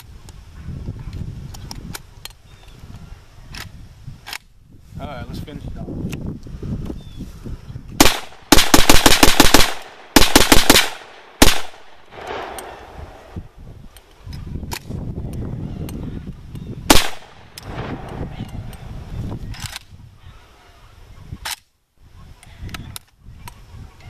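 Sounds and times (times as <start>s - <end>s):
rifle shots: 8.0s - 13.4s, 16.9s - 18.3s.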